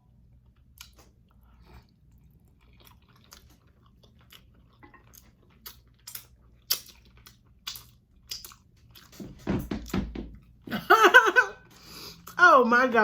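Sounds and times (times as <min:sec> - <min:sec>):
person chewing: 0:00.3 - 0:09.2.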